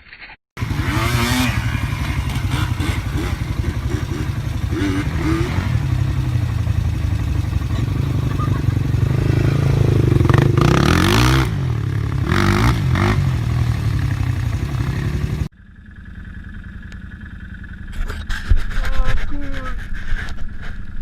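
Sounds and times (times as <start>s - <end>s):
engine revving: 0.6s - 15.5s
low engine hum: 0.6s - 21.0s.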